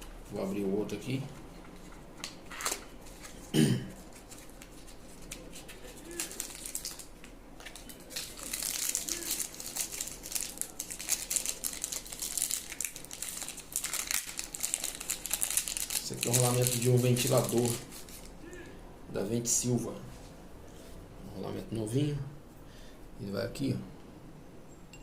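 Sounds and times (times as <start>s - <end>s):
plastic packaging crinkling and tearing: 1.8s - 18.4s.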